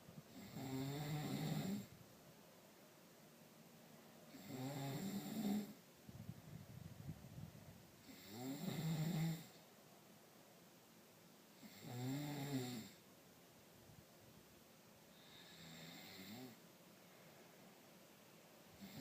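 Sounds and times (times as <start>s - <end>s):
man snoring: 0.3s - 1.9s, 4.3s - 5.8s, 8.0s - 9.6s, 11.6s - 13.0s, 15.2s - 16.6s, 18.8s - 19.0s.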